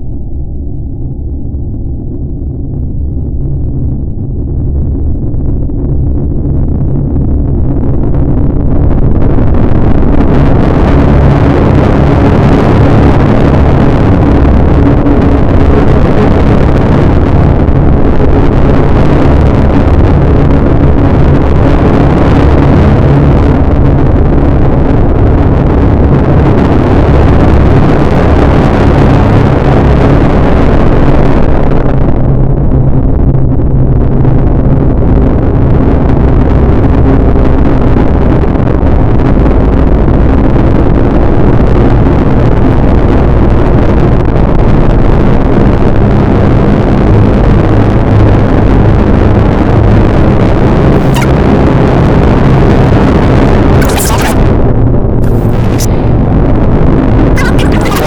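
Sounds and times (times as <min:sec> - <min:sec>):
low hum: 0:00.0 - 0:30.1, 0:53.8 - 0:58.0
distorted electronic noise: 0:51.0 - 0:51.5, 0:53.8 - 0:54.5, 0:55.2 - 0:56.7, 0:57.3 - 0:58.0.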